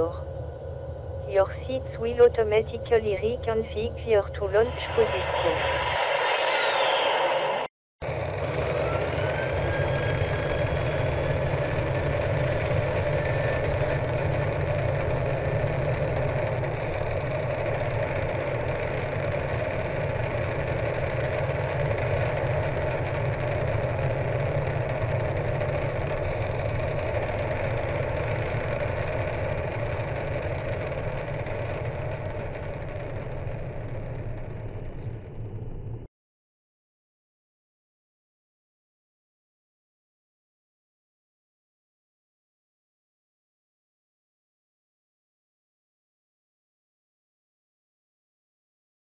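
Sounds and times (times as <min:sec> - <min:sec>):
deep engine rumble: 0:00.0 - 0:36.1
faint rising whine: 0:00.0 - 0:36.1
hum: 0:00.0 - 0:36.1.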